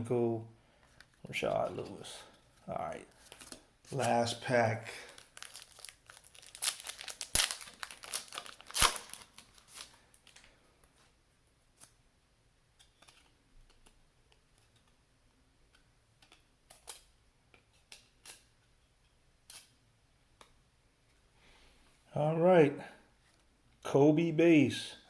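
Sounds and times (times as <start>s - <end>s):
faint clicks of cards handled: 2.3s - 4.2s, 12.8s - 15.0s, 15.7s - 18.7s
card pack wrapper tearing and crinkling: 3.3s - 10.4s.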